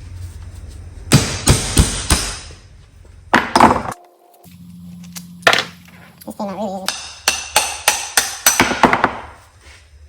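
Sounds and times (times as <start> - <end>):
hammer striking metal: 6.8 - 9.2.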